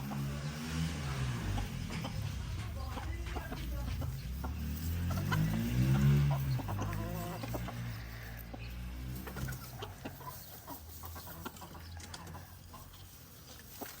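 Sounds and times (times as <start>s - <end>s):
low steady rumble: 0.0s - 10.4s
chickens clucking: 0.0s - 14.0s.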